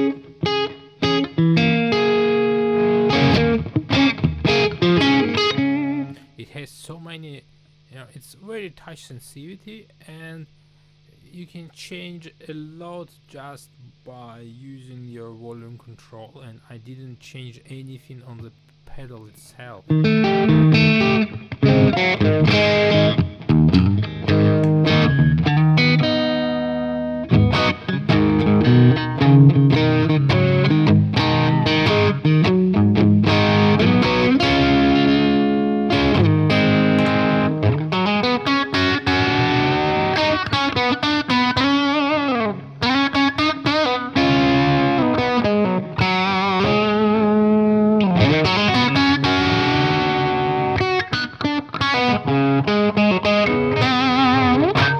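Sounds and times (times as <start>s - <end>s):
overdriven electric guitar: 0.0s - 6.4s, 19.9s - 54.9s.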